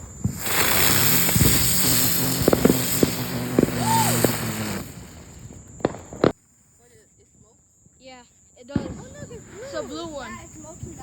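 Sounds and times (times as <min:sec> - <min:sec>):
fountain firework hissing: 0:00.0 - 0:06.3
firework crackles: 0:00.0 - 0:07.0.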